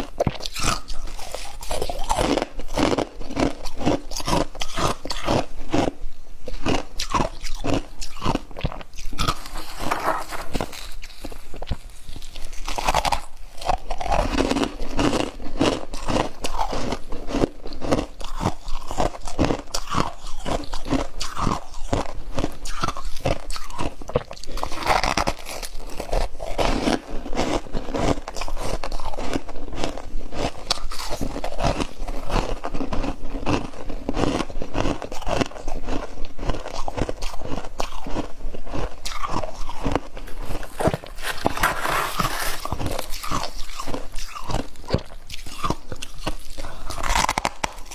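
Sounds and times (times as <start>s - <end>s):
chewing crunchy frost: 0.0s - 47.9s.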